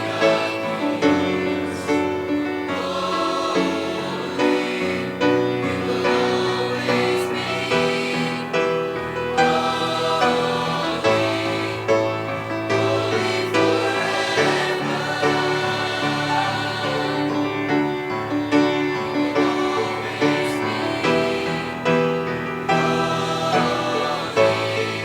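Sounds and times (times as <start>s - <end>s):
choir singing: 0.0s - 25.0s.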